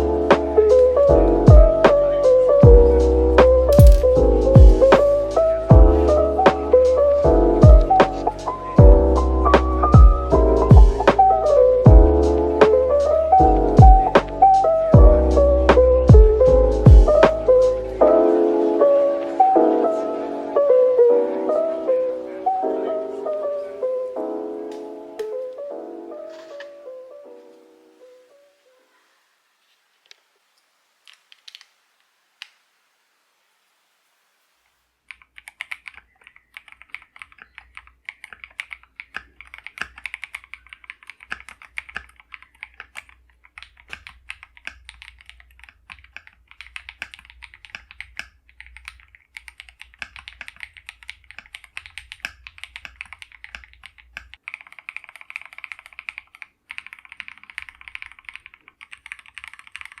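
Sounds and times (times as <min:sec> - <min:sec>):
mechanical keyboard typing: 0:03.7 - 0:04.2, 0:35.1 - 1:00.0.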